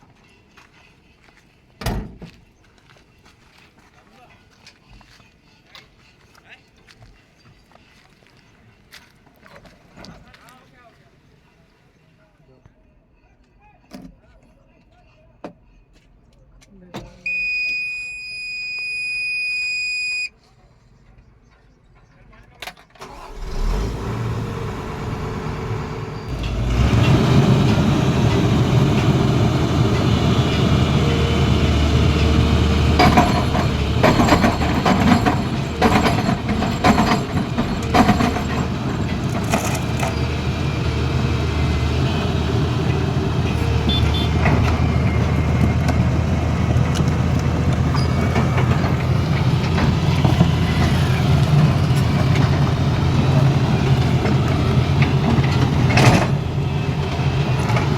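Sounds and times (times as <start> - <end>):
heavy diesel engine running: 23.0 - 57.9.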